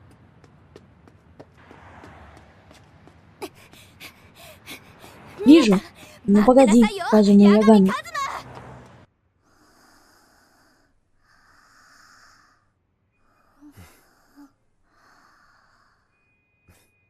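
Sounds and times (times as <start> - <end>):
person breathing while asleep: 9.4 - 17.0.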